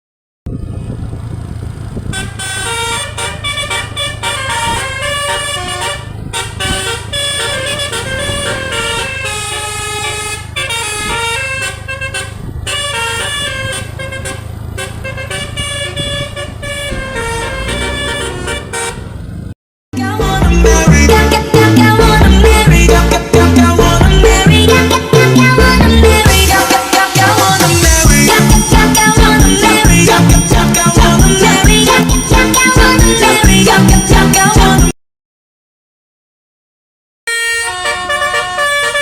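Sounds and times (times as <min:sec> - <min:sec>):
low engine rumble: 0:00.5 - 0:34.8
musical air horn tune: 0:02.1 - 0:19.1, 0:37.3 - 0:39.0
loud music: 0:20.0 - 0:34.9.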